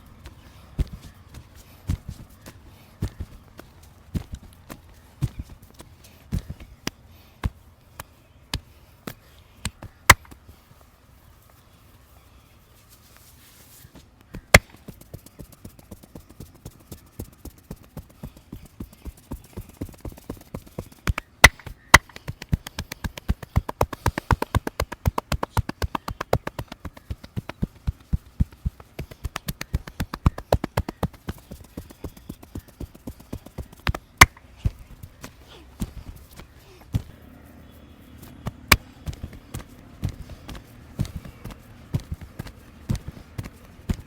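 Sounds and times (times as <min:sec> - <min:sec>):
hands tapping and slapping body: 0:00.1 - 0:10.5, 0:14.3 - 0:37.2, 0:38.2 - 0:44.0
loud slaps: 0:21.1 - 0:27.6.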